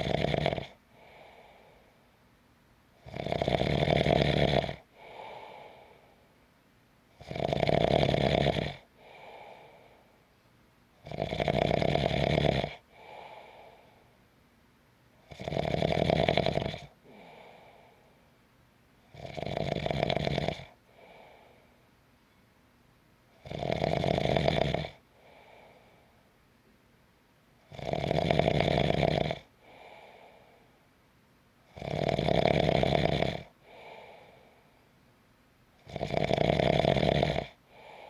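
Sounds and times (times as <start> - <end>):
person snoring: 0.0 - 1.7, 3.0 - 6.0, 7.2 - 9.8, 11.0 - 13.9, 15.3 - 17.9, 19.1 - 21.5, 23.4 - 25.8, 27.7 - 30.4, 31.7 - 34.4, 35.9 - 38.0
soft breaths: 0.7 - 2.5, 4.5 - 6.6, 8.8 - 10.8, 12.7 - 14.5, 16.3 - 18.6, 20.7 - 22.6, 25.0 - 26.9, 29.4 - 31.0, 33.4 - 35.1, 37.2 - 38.0.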